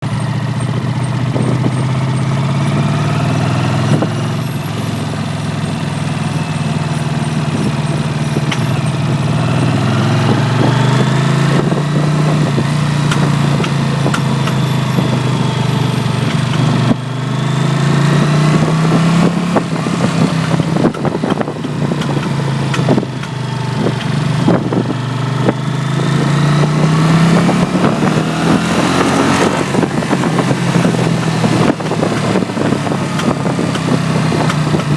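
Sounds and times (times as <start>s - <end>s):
motorcycle engine revving: 0.0s - 34.9s
exhaust pops and cracks: 11.6s - 15.4s, 29.0s - 34.9s.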